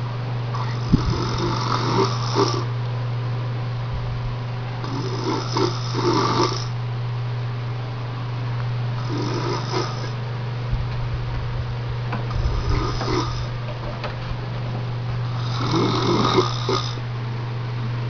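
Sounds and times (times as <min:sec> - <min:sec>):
steady low hum: 0:00.0 - 0:18.0
man snoring: 0:00.5 - 0:02.7, 0:04.8 - 0:06.8, 0:09.0 - 0:10.2, 0:12.3 - 0:13.6, 0:15.2 - 0:17.0.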